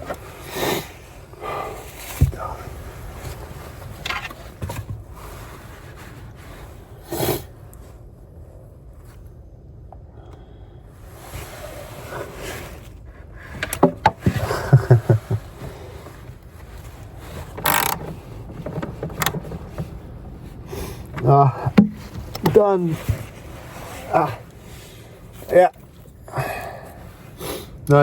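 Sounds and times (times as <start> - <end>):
hands scraping and rustling: 11.2 - 28.0
sharp clicks and knocks: 13.5 - 15.4, 17.2 - 23.3.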